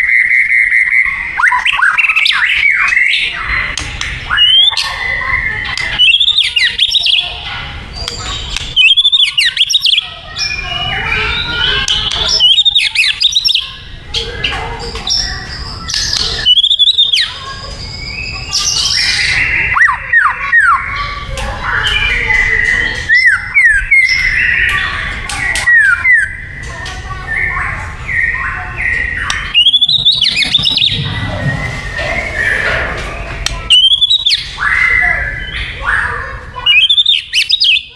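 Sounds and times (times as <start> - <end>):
low background hum: 0.0 - 37.9
bird singing whistled song: 4.3 - 4.8, 5.7 - 7.2, 8.8 - 13.8, 15.0 - 20.8, 28.1 - 35.7, 36.6 - 37.9.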